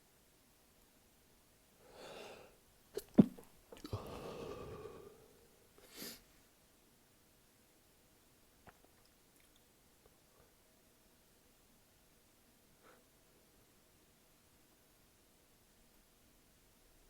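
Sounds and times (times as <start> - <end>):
person breathing: 1.8 - 2.6, 3.8 - 6.2
person sneezing: 3.0 - 5.2.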